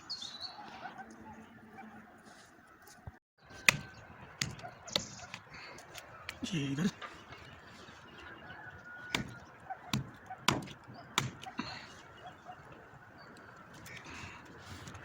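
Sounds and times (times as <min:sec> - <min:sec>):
knife chopping meat and bone: 0:03.6 - 0:05.4, 0:09.0 - 0:11.5.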